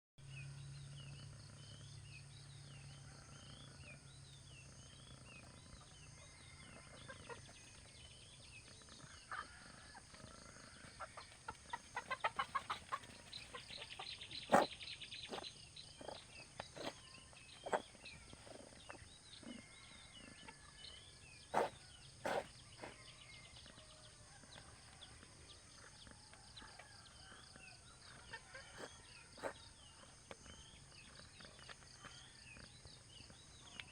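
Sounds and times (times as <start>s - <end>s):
chickens clucking: 9.0s - 17.0s, 17.6s - 19.7s, 21.5s - 23.1s, 26.5s - 30.4s.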